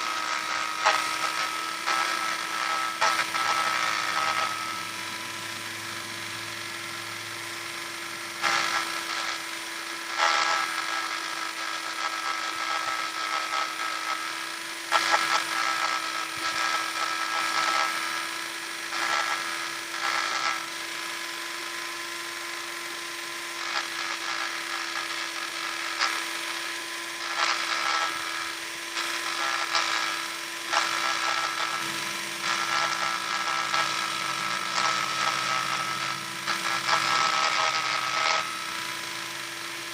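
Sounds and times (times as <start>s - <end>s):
gritty sanding noise: 0.0s - 5.8s, 23.6s - 39.9s
power sander humming: 0.0s - 39.9s.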